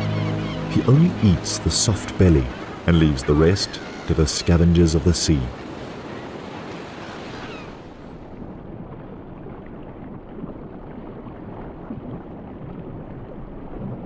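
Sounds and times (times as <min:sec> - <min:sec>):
muffled rumble of moving water: 0:00.0 - 0:14.0
hiss of surf: 0:00.7 - 0:06.0.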